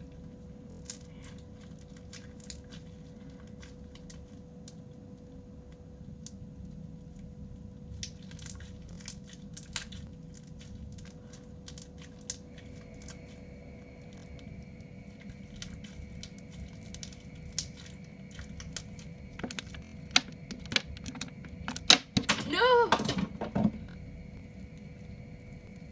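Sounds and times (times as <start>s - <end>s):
faint steady hum: 0.0s - 25.9s.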